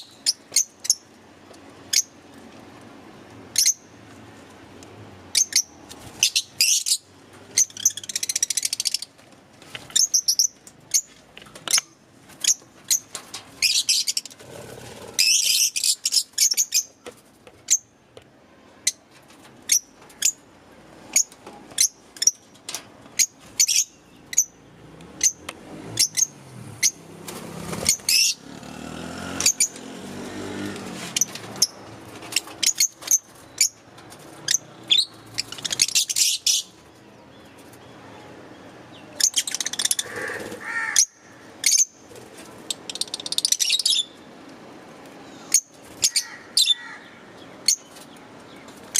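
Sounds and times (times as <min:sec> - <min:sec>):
lovebirds chirping: 0:05.3 - 0:09.1, 0:10.0 - 0:17.0, 0:29.4 - 0:29.9, 0:31.2 - 0:42.0, 0:42.7 - 0:44.2.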